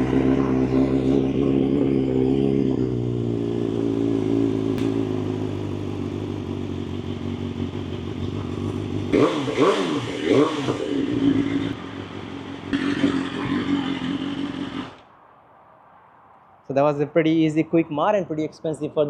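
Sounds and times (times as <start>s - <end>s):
motorcycle engine idling: 0.0s - 14.8s.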